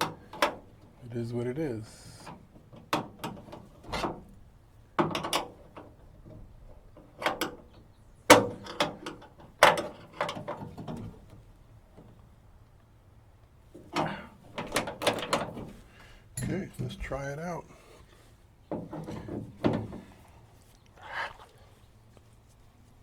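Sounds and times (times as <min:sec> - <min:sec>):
metal clicks and clunks: 0:00.0 - 0:01.0, 0:02.2 - 0:12.2, 0:13.8 - 0:17.2, 0:18.7 - 0:20.2.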